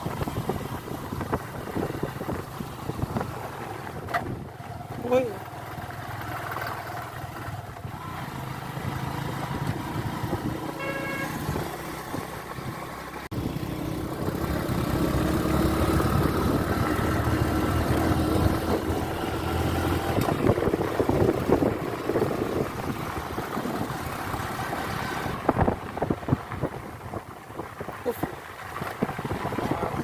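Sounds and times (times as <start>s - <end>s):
vehicle engine and road noise: 0.0s - 30.0s
horn toot: 10.8s - 11.6s.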